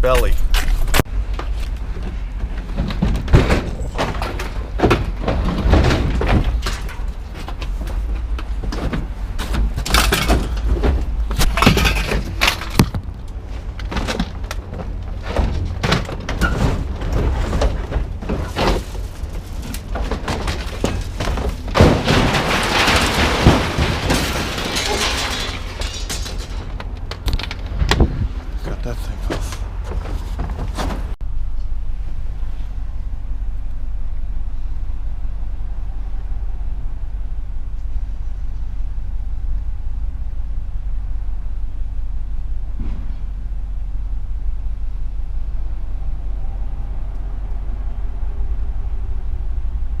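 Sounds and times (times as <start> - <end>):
low rumble: 0.0 - 50.0
metallic bangs and knocks: 0.1 - 31.2
metal scraping on ground: 0.3 - 31.2.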